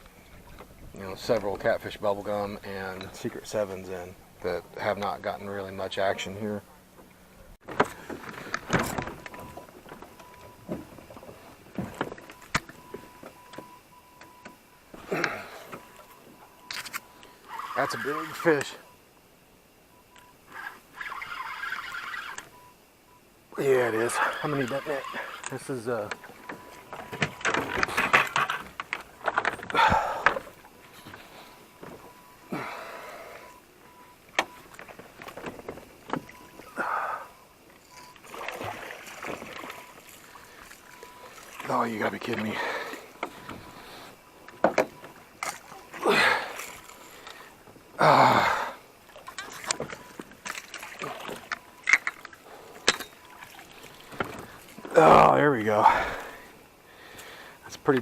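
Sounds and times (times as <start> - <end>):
knocks of handling gear in boat: 6.9 - 17.0, 25.3 - 48.6, 49.2 - 55.0.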